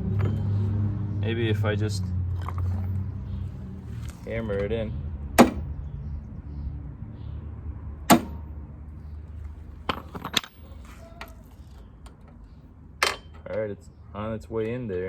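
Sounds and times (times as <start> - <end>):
hammer striking metal pin: 8.1 - 8.4.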